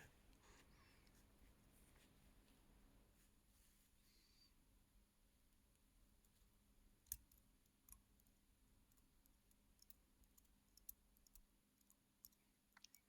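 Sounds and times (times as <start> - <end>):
faint clicks of watch parts: 5.4 - 13.0.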